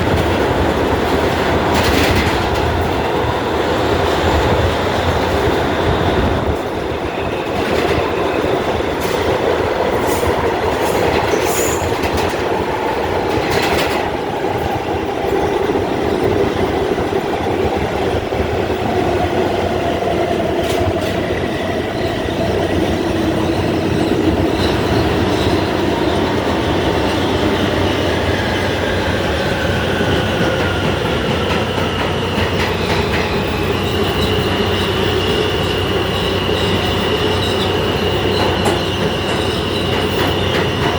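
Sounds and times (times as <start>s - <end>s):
train wheels rumbling on rail: 0.0s - 40.9s
high wheel squeal: 21.5s - 40.9s.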